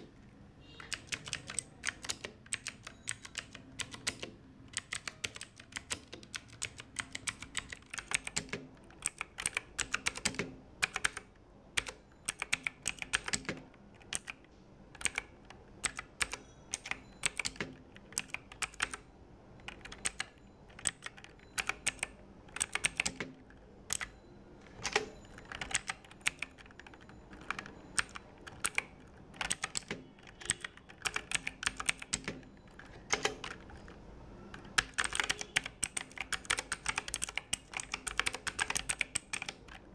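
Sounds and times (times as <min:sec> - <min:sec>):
mechanical keyboard typing: 0:00.0 - 0:19.0, 0:19.6 - 0:39.9.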